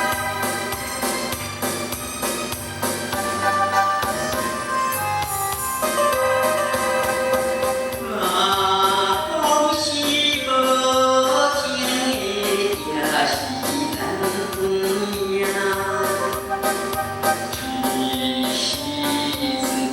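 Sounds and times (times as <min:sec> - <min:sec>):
backing track with drum beat: 0:00.0 - 0:19.9
man singing karaoke: 0:07.8 - 0:19.9.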